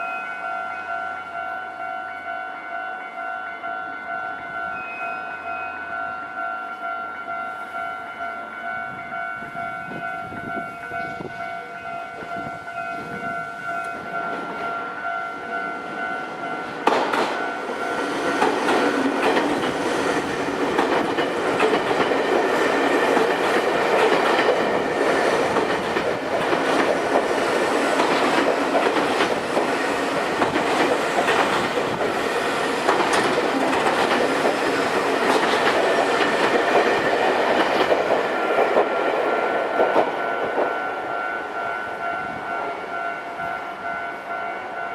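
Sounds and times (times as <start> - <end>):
level crossing warning bell: 0.0 - 44.9
train passing: 0.0 - 44.9
train wheels clattering: 16.7 - 41.0.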